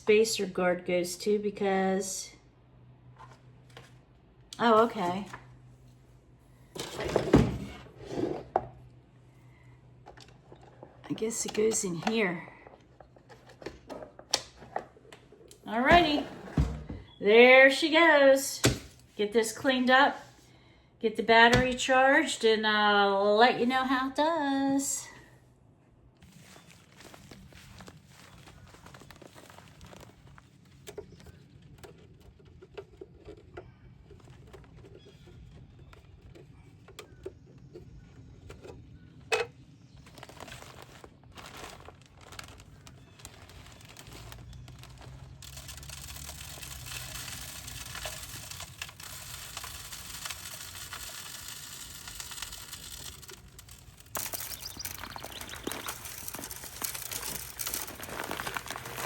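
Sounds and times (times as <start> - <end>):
paper and plastic crinkling: 26.2 - 33.4, 40.0 - 59.0.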